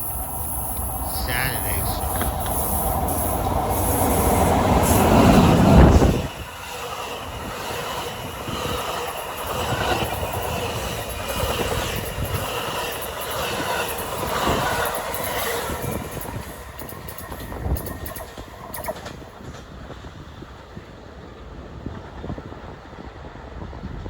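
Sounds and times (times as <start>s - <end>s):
train rumbling past: 0.0s - 24.0s.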